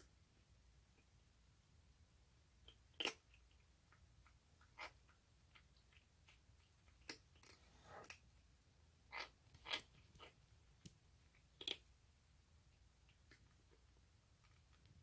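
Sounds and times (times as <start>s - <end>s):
kitten chewing food: 2.6s - 8.4s, 9.1s - 11.9s.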